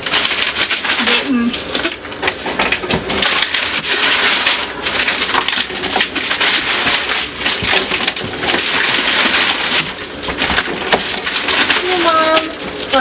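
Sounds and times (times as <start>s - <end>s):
plastic bags crinkling: 0.0s - 13.0s.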